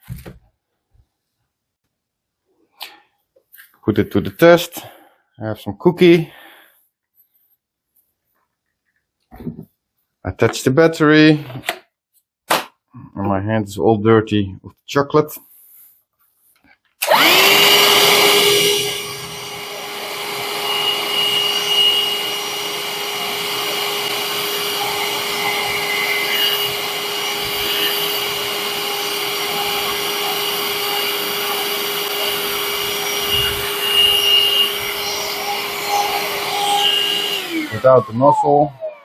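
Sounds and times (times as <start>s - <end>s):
handheld vacuum cleaner whine: 17.0s - 39.0s.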